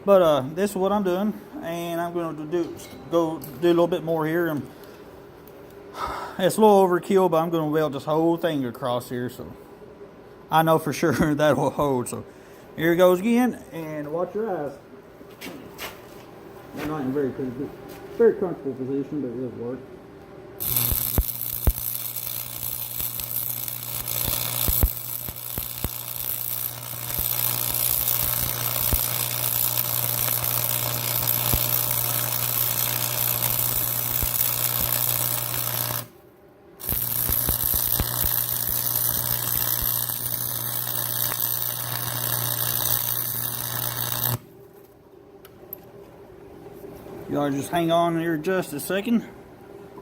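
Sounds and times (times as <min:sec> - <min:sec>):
low electrical hum: 0:00.0 - 0:50.0
welding arc crackling: 0:20.6 - 0:36.2, 0:36.8 - 0:44.5.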